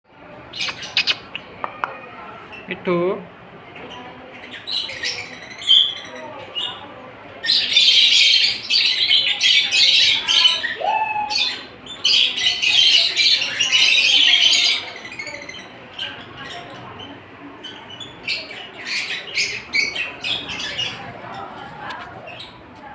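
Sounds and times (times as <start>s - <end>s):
parrot chirps: 0.5s - 1.5s
parrot squawking: 0.6s - 1.3s.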